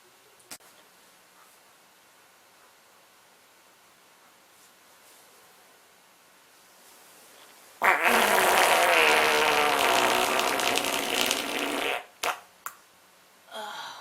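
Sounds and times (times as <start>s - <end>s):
human fart: 7.8s - 12.5s.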